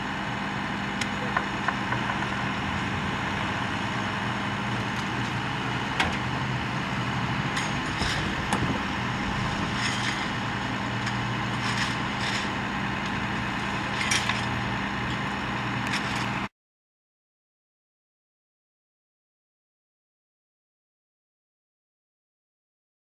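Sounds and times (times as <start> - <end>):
heavy engine idling: 0.0 - 16.5
sharp clicks and knocks: 1.0 - 2.3.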